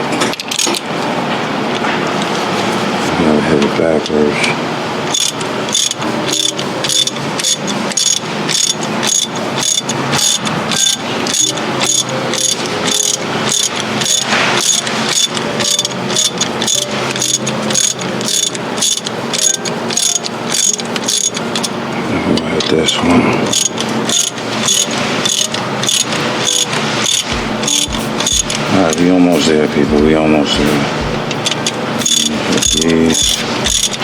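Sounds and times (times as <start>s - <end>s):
hand ratchet clicking: 5.1s - 21.7s, 23.5s - 29.5s, 30.6s - 34.0s.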